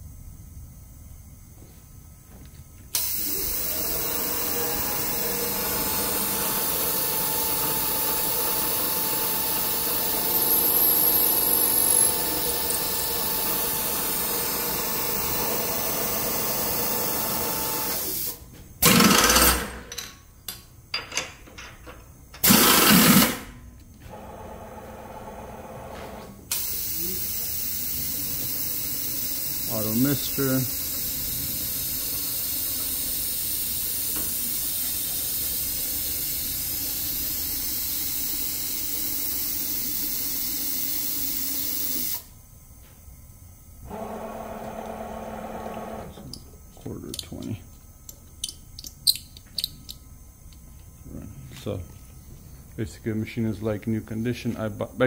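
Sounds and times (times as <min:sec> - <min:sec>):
milling machine spindle running: 0:03.0 - 0:18.3.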